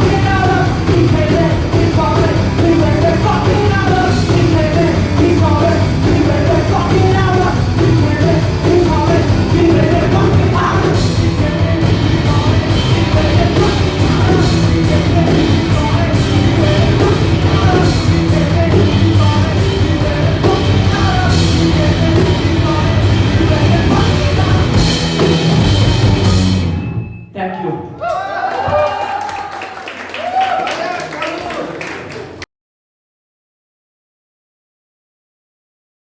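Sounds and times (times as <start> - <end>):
person singing: 0.0 - 26.6
drum kit with cymbals: 0.0 - 27.1
rock band playing loud: 0.0 - 27.2.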